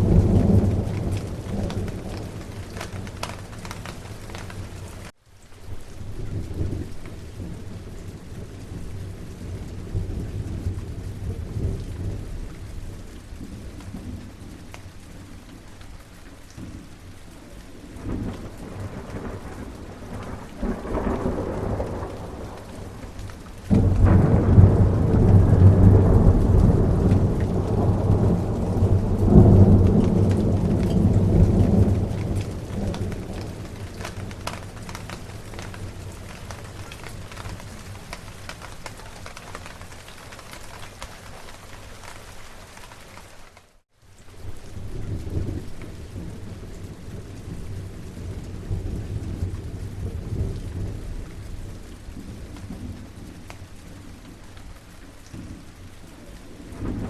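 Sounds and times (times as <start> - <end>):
rolling thunder: 0.0 - 5.1, 17.9 - 39.6, 56.5 - 57.0
steady rain: 0.0 - 57.0.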